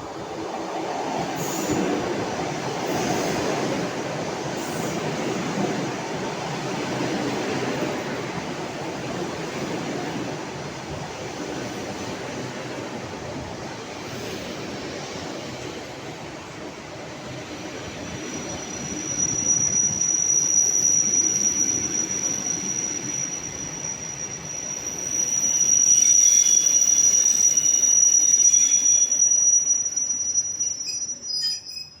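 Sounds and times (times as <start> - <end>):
high wheel squeal: 17.9 - 32.0.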